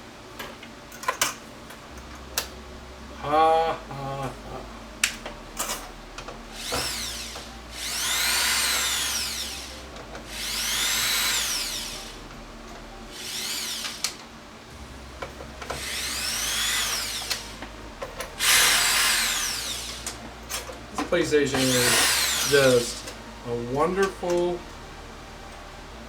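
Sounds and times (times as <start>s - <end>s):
electric screwdriver whining: 6.6s - 12.2s, 13.1s - 14.3s, 15.6s - 23.2s.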